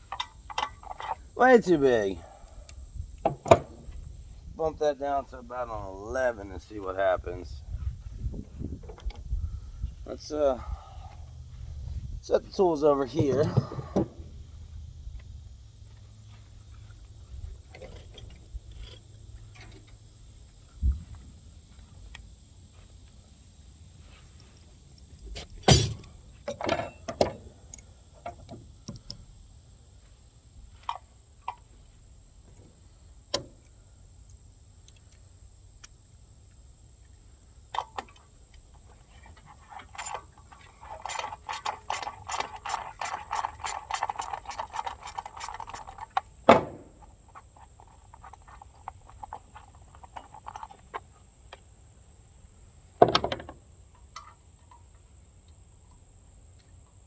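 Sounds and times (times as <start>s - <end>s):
hand tools clanking on metal: 0.0s - 1.8s, 25.4s - 27.3s, 39.2s - 47.1s
sharp knocks: 46.5s - 47.1s.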